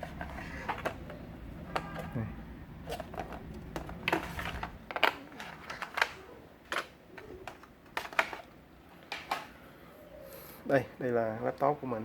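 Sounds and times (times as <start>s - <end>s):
hard objects clicking and knocking: 0.0s - 2.2s, 2.8s - 9.6s.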